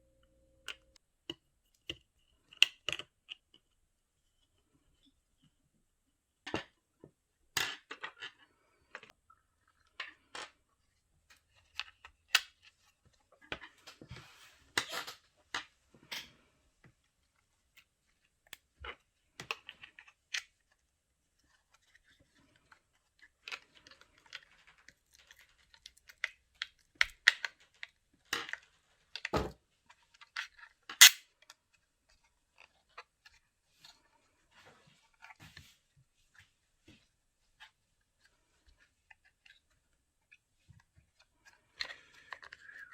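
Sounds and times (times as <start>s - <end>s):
plastic parts clicking together: 30.2s - 31.2s.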